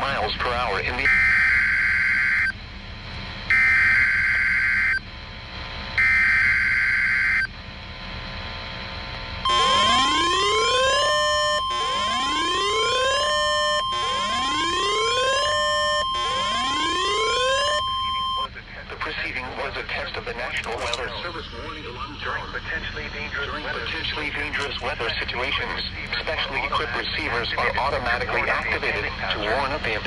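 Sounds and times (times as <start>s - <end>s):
steady warning alarm tone: 0.0s - 2.8s, 3.4s - 5.1s, 5.9s - 7.6s, 9.4s - 18.5s
rising siren-like sweep: 9.4s - 18.5s
screeching digital header bursts: 9.5s - 18.5s.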